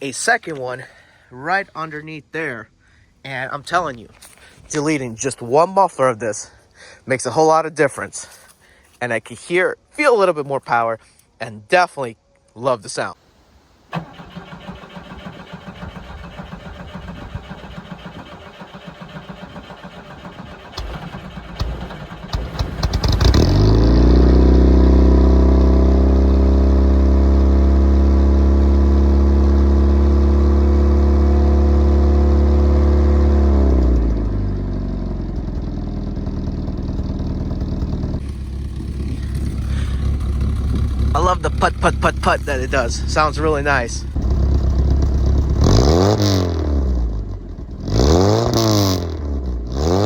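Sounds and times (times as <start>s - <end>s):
car engine idling and revving: 14.3s - 50.0s.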